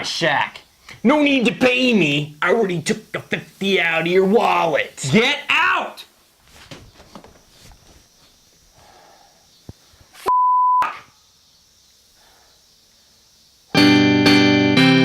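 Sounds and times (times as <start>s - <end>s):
faint rustling: 6.1s - 10.2s
censor bleep: 10.2s - 11.1s.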